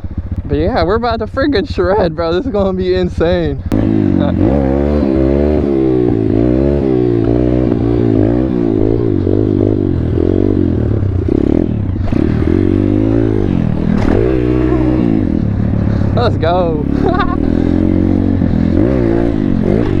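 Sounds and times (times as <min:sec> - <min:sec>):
motorbike engine revving: 0:00.0 - 0:20.0.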